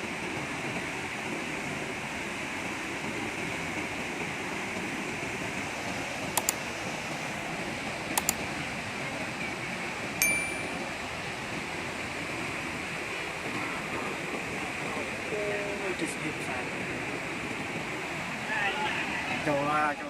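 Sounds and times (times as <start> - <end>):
sharp clicks: 6.4 - 6.6, 8.2 - 8.4
ringing ding: 10.2 - 11.0.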